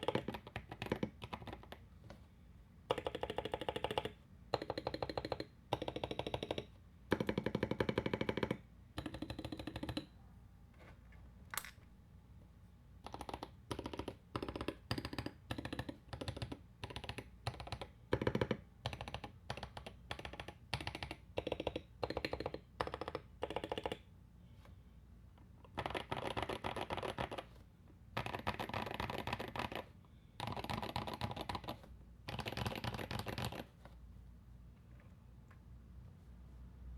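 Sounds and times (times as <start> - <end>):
typing on mechanical keyboard: 0.0 - 1.8, 2.9 - 10.1, 13.0 - 24.0, 25.6 - 27.5, 28.2 - 33.8.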